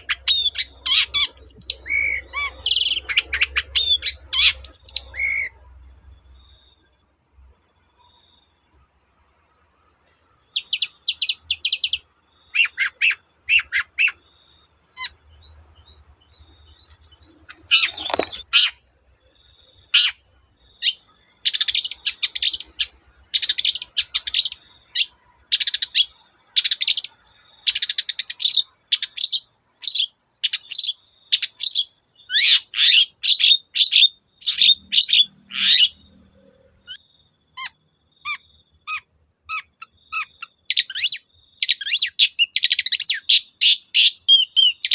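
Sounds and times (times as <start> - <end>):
bird singing sharp chirps: 14.9 - 18.8
harsh bird call: 17.5 - 18.8.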